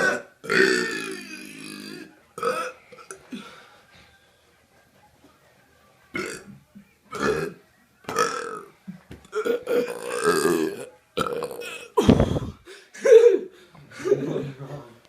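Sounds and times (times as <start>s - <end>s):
man burping: 0.0s - 3.1s, 8.1s - 8.6s, 9.3s - 12.6s.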